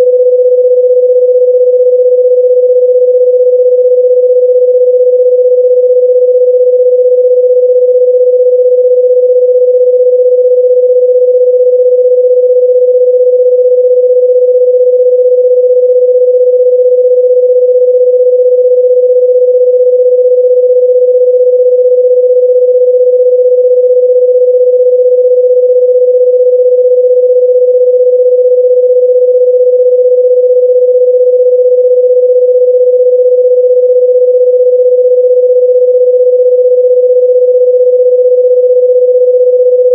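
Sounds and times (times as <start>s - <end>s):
steady electronic sine tone: 0.0s - 39.9s.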